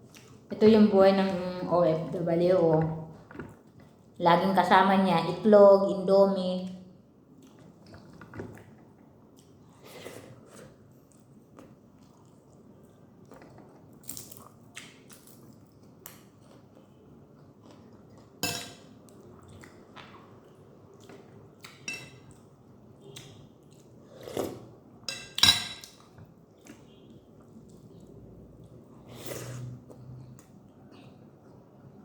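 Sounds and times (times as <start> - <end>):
person chewing with wet smacks: 7.3 - 18.4, 19.0 - 24.7, 25.9 - 32.0.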